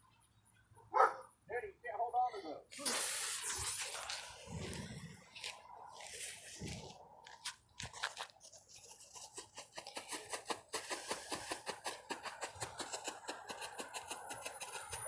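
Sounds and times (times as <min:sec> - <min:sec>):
firework crackling: 0:02.8 - 0:04.9, 0:09.3 - 0:15.0.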